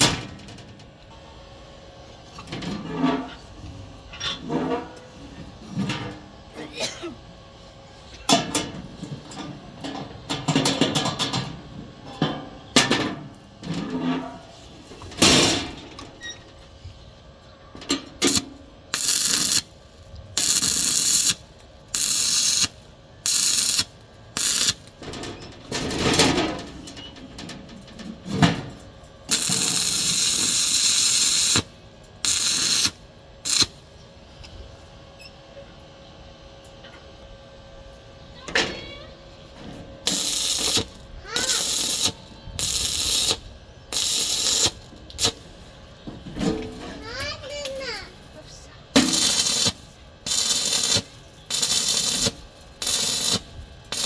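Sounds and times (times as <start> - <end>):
steel being handled clatter: 18.2 - 19.7, 20.4 - 22.7, 23.3 - 28.6, 29.3 - 31.6, 32.3 - 32.9, 40.1 - 45.5, 49.0 - 54.0
arc welding hiss: 18.2 - 19.8, 20.4 - 25.0, 29.3 - 33.8, 40.1 - 45.5, 49.0 - 54.0.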